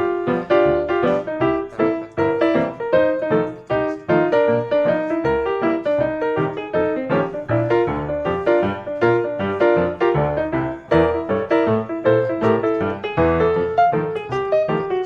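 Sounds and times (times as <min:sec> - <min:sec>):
piano notes run: 0:00.0 - 0:15.0.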